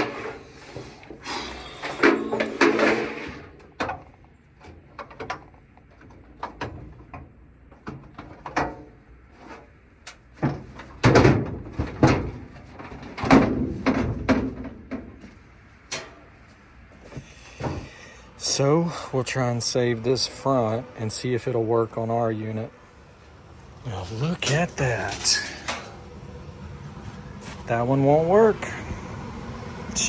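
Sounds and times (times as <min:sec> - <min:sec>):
sheet metal clanking and rattling: 0:00.0 - 0:17.9, 0:23.9 - 0:26.2
sheet metal parts clicking: 0:24.2 - 0:26.0.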